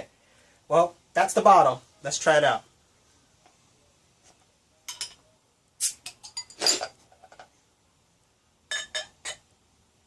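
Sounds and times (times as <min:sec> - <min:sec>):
glass bottle and glassware clinking: 0:04.9 - 0:05.3, 0:06.0 - 0:07.5, 0:08.7 - 0:09.4.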